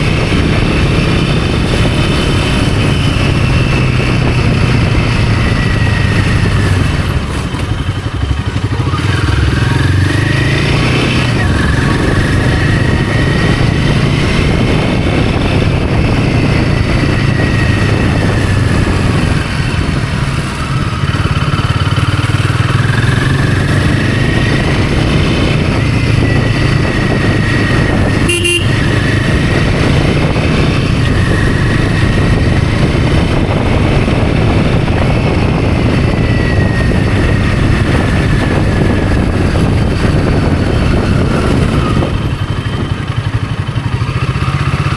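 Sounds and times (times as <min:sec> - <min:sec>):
motorcycle engine running: 0:00.0 - 0:44.9
short horn beep: 0:28.1 - 0:29.0.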